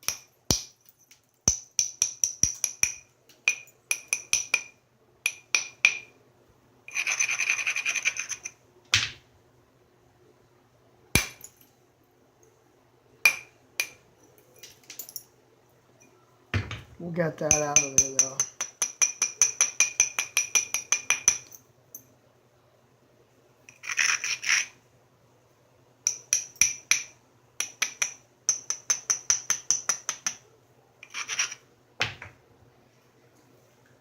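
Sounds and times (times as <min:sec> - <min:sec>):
stone scraping: 0:06.9 - 0:08.6, 0:23.7 - 0:24.8, 0:31.0 - 0:31.6
heavy knock on stone: 0:16.5 - 0:17.0
stone tapped with ringing clicks: 0:26.1 - 0:30.4.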